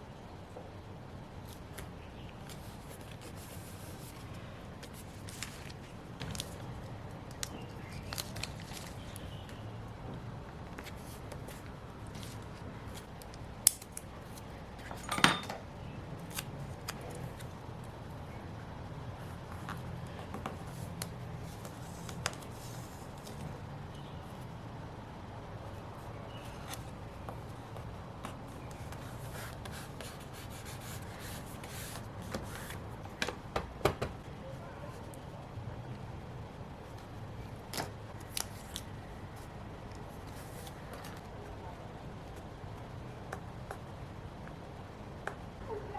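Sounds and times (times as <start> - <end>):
paper rustling: 1.4 - 6.7, 7.3 - 9.4, 10.6 - 13.1.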